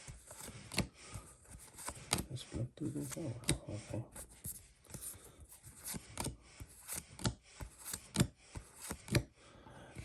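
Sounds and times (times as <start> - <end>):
trading cards flipped by hand: 0.3 - 2.3, 5.7 - 9.3.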